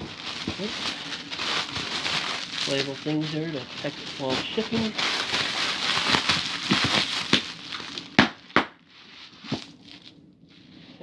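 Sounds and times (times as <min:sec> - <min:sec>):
packing material crinkling: 0:00.0 - 0:11.0.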